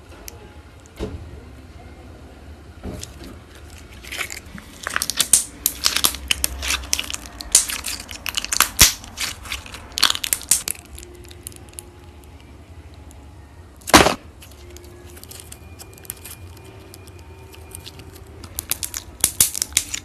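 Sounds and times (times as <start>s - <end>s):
slime crackling and popping: 3.6s - 12.4s, 13.8s - 20.0s.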